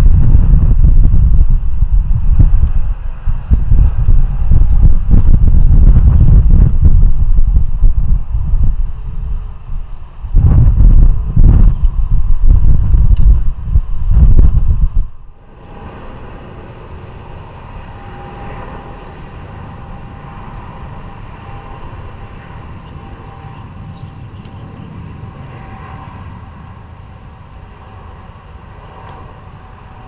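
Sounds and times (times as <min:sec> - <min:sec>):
distant jet engines rushing: 0:00.0 - 0:30.0
loud low rumble: 0:00.0 - 0:30.0.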